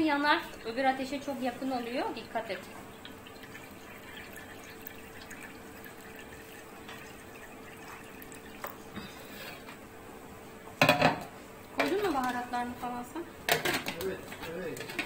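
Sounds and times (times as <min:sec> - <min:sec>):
water bubbling in a pot: 0:00.0 - 0:10.7.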